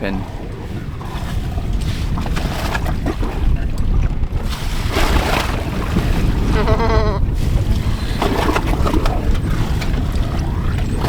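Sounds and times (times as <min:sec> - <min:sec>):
waves washing against hull: 0:00.0 - 0:11.0
wind buffeting microphone: 0:00.0 - 0:11.0.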